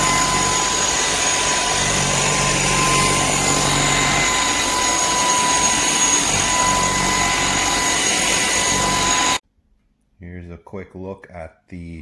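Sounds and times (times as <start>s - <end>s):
vacuum cleaner motor whine: 0.0s - 9.4s.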